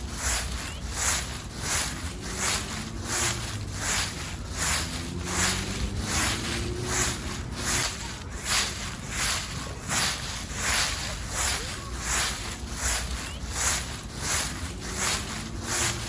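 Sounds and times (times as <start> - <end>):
footsteps crunching through dry leaves: 0.0 - 16.0.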